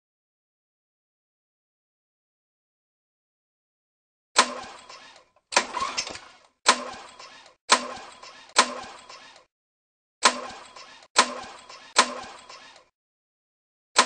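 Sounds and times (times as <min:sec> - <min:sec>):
lawn mower pull-start bursts: 0:04.4 - 0:09.4.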